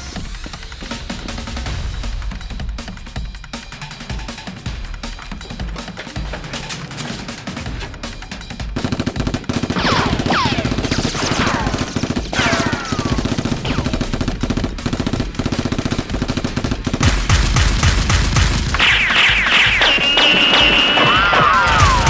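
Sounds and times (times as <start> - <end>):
rapid automatic gunfire: 5.4 - 22.0
falling whistling tones: 19.0 - 22.0.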